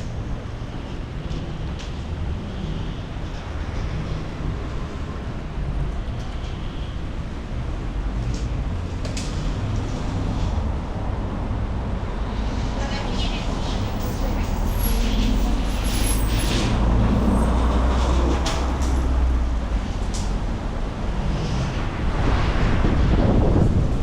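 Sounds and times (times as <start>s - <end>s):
wind buffeting microphone: 16.7s - 24.0s.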